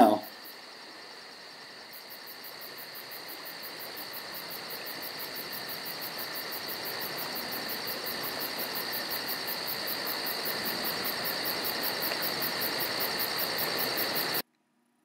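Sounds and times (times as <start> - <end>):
crickets chirping: 0.0 - 14.4
steady hiss: 0.0 - 14.4.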